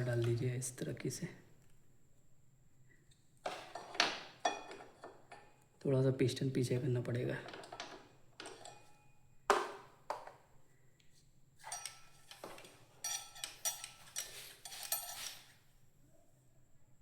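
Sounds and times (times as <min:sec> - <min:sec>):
tools clinking and scraping metal: 0:03.4 - 0:05.7, 0:07.1 - 0:09.2, 0:11.6 - 0:15.6.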